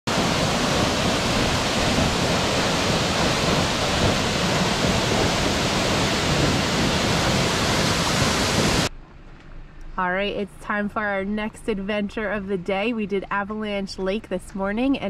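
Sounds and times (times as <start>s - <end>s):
waterfall pouring: 0.1s - 8.9s.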